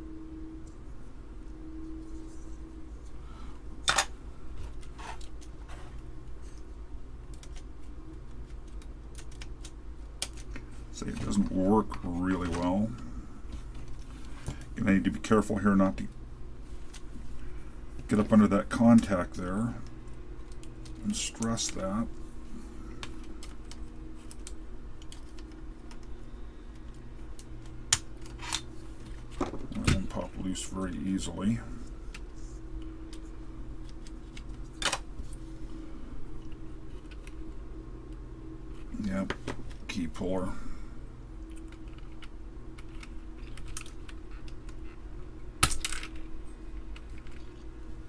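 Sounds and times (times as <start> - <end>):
faint low hum: 0.0 - 48.0
keycaps clicking and rattling: 8.2 - 10.5, 41.5 - 44.8.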